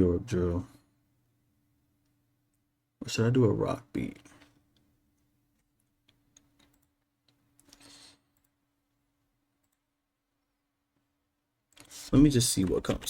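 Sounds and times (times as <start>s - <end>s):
computer mouse clicks: 5.6s - 8.6s, 9.6s - 9.9s.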